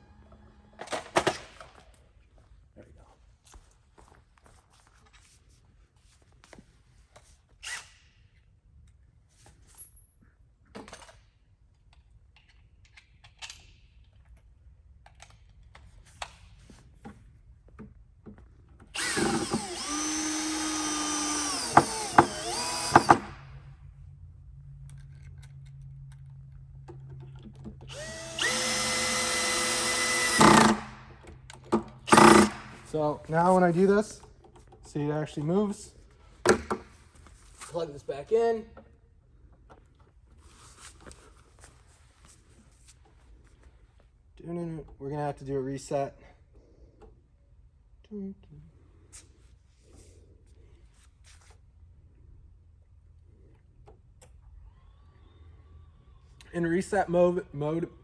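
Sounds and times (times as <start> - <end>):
power drill driving screws: 19.0 - 23.6, 27.9 - 31.2, 31.8 - 33.0.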